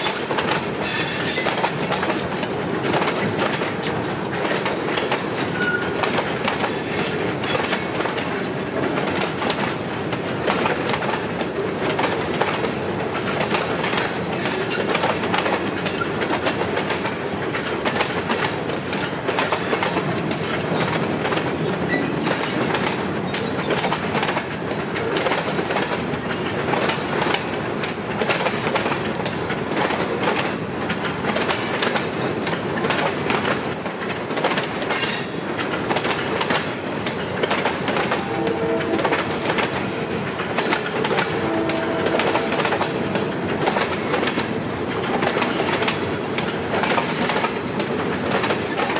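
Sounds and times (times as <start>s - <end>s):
train wheels clicking over rail joints: 0.0s - 48.9s.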